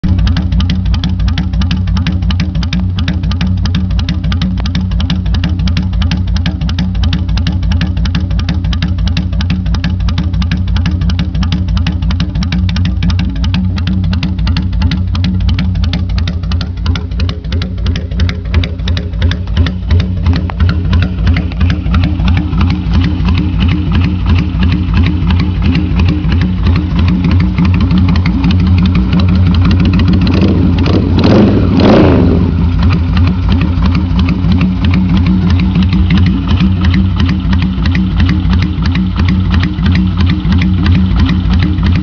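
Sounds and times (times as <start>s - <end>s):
motorcycle engine idling: 0.0s - 42.0s
engine revving: 13.0s - 42.0s.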